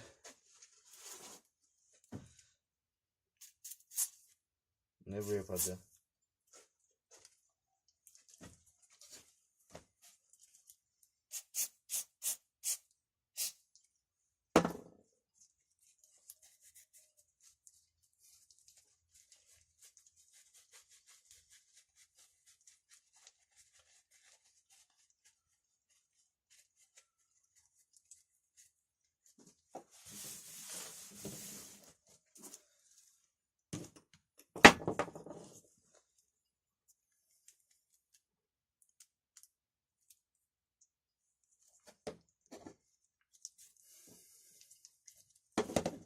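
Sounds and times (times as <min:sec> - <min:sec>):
rustling: 0:15.4 - 0:33.1.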